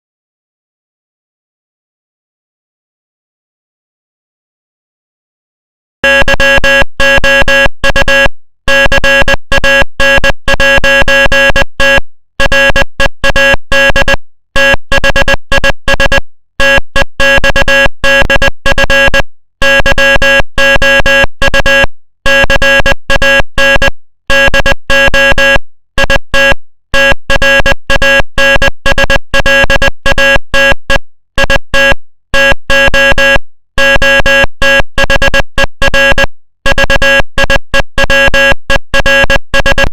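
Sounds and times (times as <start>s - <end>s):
morse code beeps: 6.0s - 39.9s.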